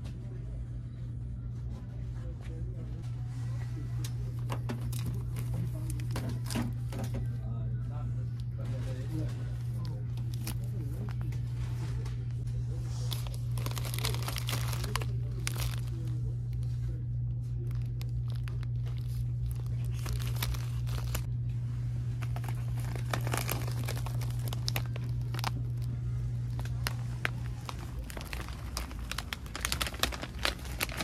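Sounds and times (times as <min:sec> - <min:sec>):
low hum: 0:00.0 - 0:31.0
packaging crinkling and rustling: 0:04.2 - 0:07.2, 0:08.6 - 0:12.1, 0:12.9 - 0:16.8, 0:17.4 - 0:21.3, 0:22.1 - 0:31.0.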